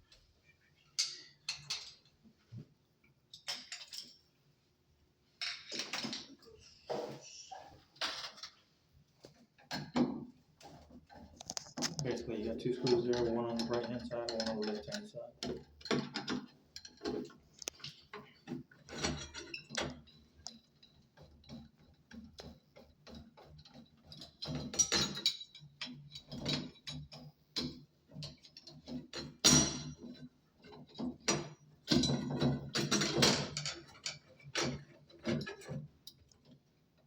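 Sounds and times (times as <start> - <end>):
screwdriver clicking and scraping metal: 11.2 - 12.2.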